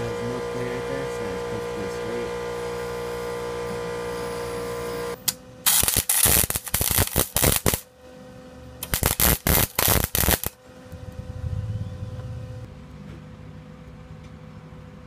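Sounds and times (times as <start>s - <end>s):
arc welding crackling: 0.0s - 7.9s, 8.8s - 10.6s.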